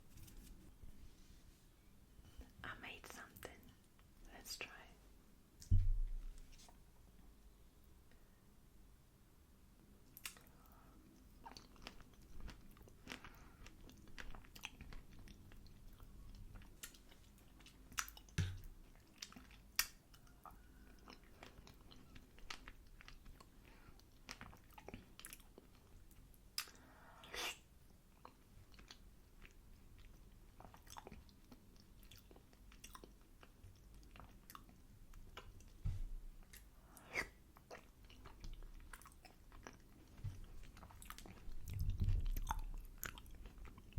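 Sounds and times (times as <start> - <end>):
person chewing crunchy food: 11.3 - 26.0, 28.1 - 35.8, 36.4 - 43.9
wet mouth clicks: 26.6 - 27.6.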